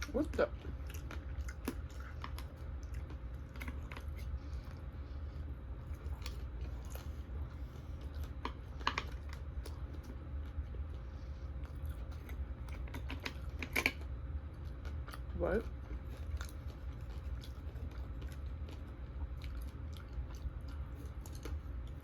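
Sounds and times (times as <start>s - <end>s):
chewing and biting food: 0.0s - 22.0s.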